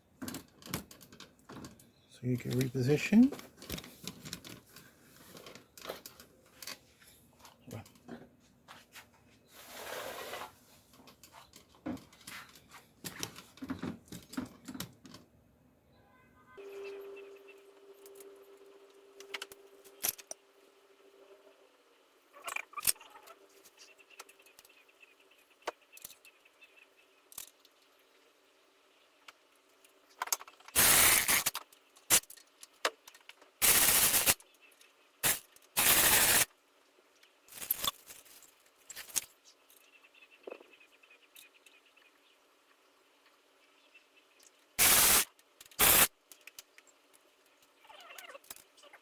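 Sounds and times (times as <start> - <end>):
power tool driving bolts: 30.7 - 32.3
tools and metal parts clinking: 37.5 - 39.9.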